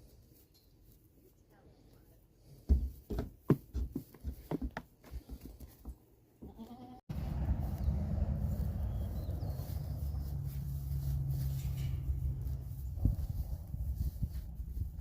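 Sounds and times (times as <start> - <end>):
goat bleating: 6.4 - 7.0.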